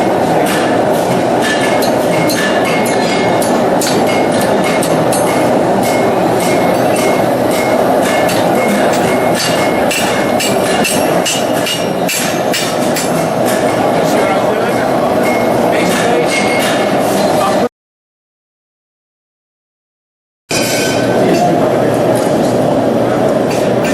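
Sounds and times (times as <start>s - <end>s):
metallic strikes with a ring: 20.5s - 21.6s.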